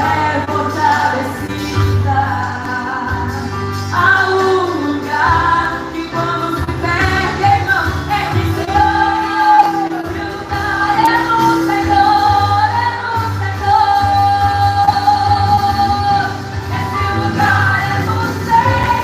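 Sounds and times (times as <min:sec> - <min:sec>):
band playing worship music: 0:00.0 - 0:19.0
steady bass line: 0:05.1 - 0:19.0.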